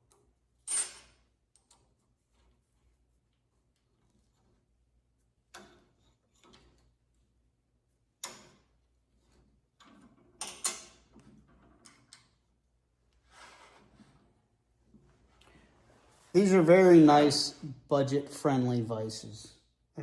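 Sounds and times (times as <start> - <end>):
metal clicks and knocks from vise: 5.6 - 7.0, 8.2 - 12.4.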